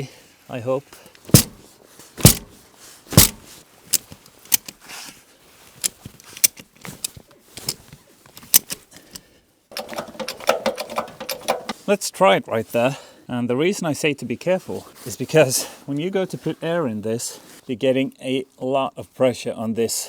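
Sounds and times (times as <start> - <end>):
sharp irregular clicks and knocks: 1.3 - 1.6, 2.2 - 2.5, 3.2 - 4.7, 5.8 - 7.8, 8.4 - 11.8.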